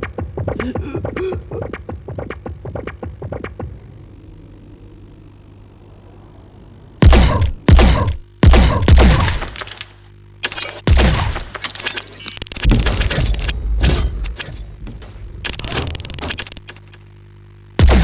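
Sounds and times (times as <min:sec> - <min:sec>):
metallic rattling: 0:09.0 - 0:17.0.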